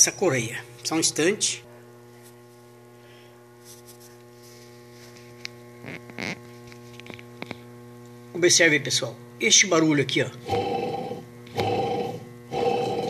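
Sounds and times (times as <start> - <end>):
electric motor humming: 10.4 - 13.0.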